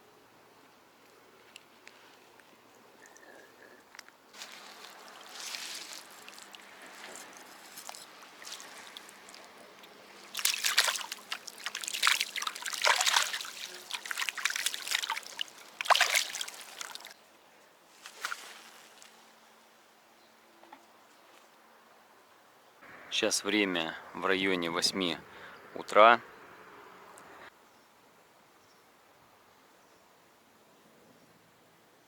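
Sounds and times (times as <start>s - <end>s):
water splashing and trickling: 4.3s - 17.2s, 17.9s - 19.4s.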